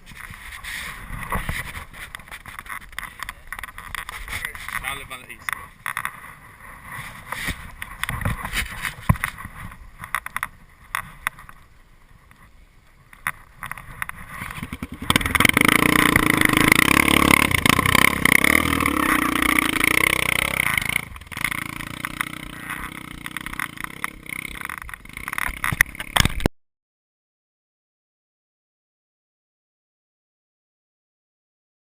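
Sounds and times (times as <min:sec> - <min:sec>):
motorcycle engine running: 0:14.3 - 0:26.5.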